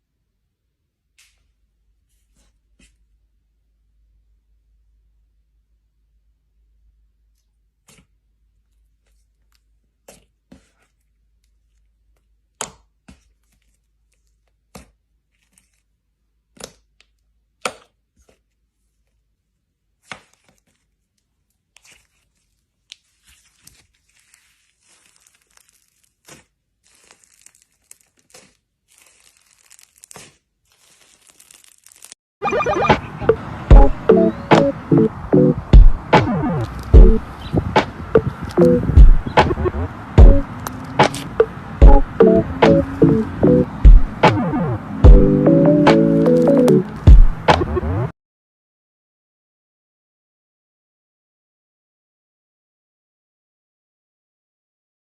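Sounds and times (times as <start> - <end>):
slime squishing with wet pops: 20.0 - 32.1.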